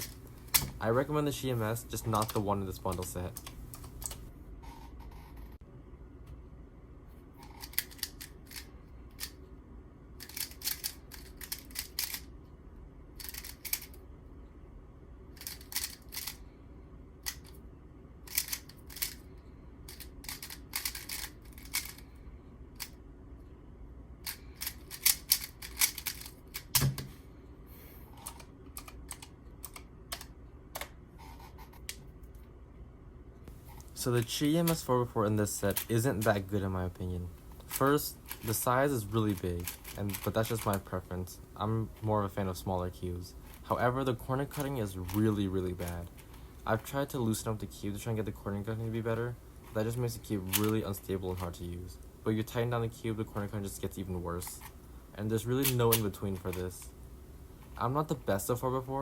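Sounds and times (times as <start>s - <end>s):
plastic puzzle cube clacking: 10.2s - 12.2s, 13.2s - 14.0s, 18.3s - 19.2s, 19.9s - 22.0s, 24.3s - 26.8s, 39.2s - 40.9s, 50.5s - 51.5s.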